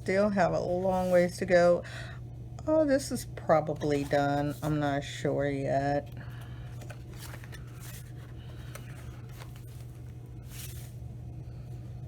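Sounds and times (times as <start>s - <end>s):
low steady hum: 0.0s - 12.0s
book pages rustling: 0.7s - 1.3s, 3.6s - 5.2s, 6.0s - 11.0s.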